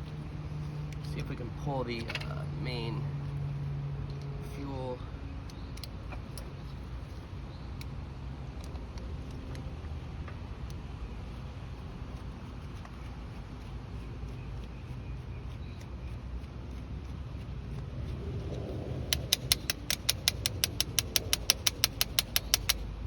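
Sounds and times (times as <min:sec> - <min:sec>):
low rumble: 0:17.2 - 0:22.1
faint small clicks and taps: 0:19.1 - 0:22.9.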